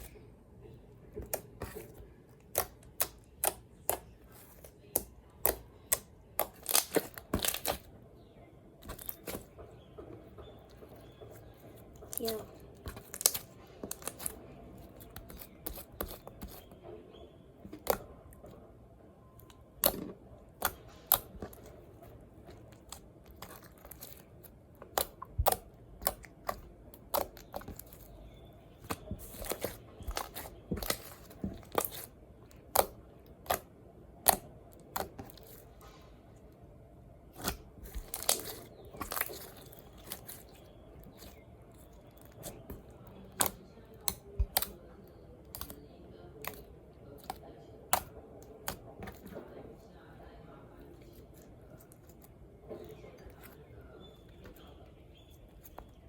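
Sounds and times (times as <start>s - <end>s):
slime clicking and popping: 4.8s - 7.9s, 32.7s - 35.5s, 37.4s - 41.4s, 43.3s - 44.8s.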